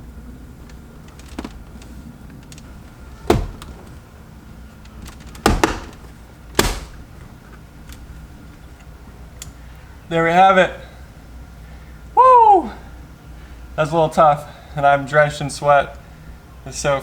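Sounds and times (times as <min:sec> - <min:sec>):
plastic clips snapping: 0:04.9 - 0:07.1.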